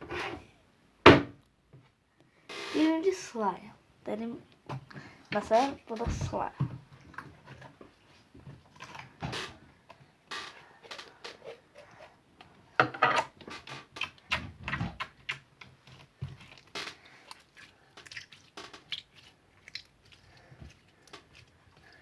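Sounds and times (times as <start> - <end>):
slime squelching by hand: 13.5 - 22.0.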